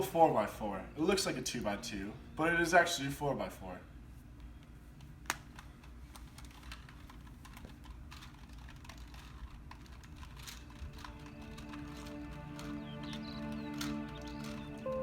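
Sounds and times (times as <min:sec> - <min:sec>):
plastic puzzle cube clicking: 0:05.0 - 0:14.9.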